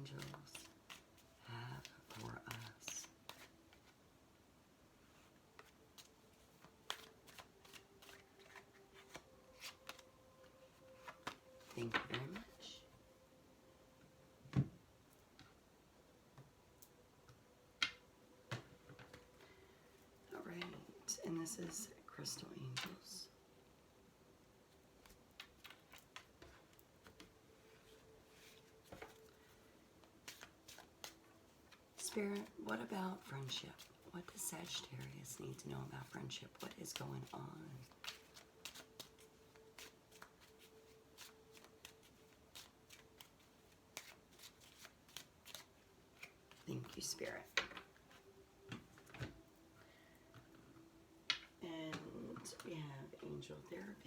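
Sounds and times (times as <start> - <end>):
cards clicking and tapping: 5.6 - 10.1, 10.9 - 12.4, 30.1 - 32.5, 36.6 - 49.4.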